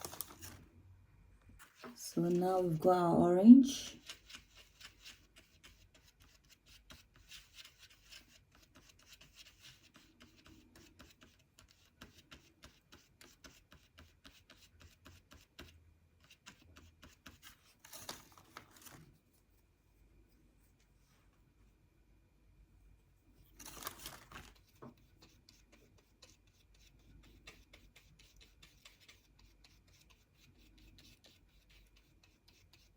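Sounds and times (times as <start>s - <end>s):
paintbrush tapping and scraping: 1.5s - 2.9s, 3.6s - 19.0s, 23.8s - 32.9s.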